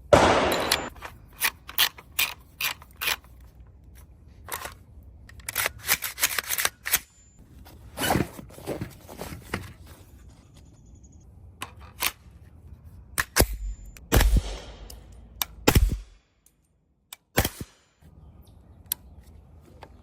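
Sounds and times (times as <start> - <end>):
suppressed rifle shots: 0.1 - 0.9, 13.4 - 16.2.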